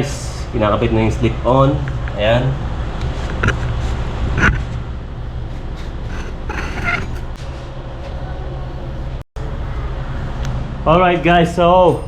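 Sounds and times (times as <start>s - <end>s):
steady low hum: 3.4s - 7.4s
squeaky creak: 5.8s - 7.4s
metal tools clicking and creaking: 6.1s - 7.4s.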